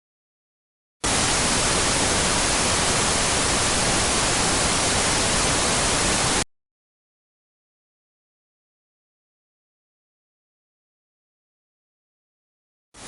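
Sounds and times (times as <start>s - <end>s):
tv static hiss: 1.0s - 6.4s.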